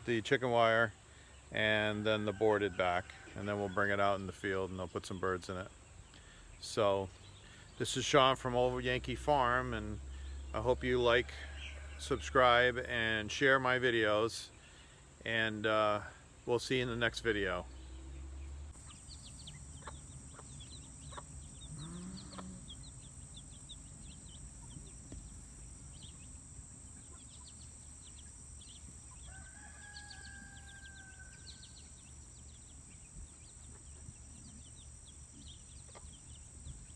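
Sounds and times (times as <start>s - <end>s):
chickens clucking: 17.4s - 36.9s
high insect whine: 18.8s - 36.9s.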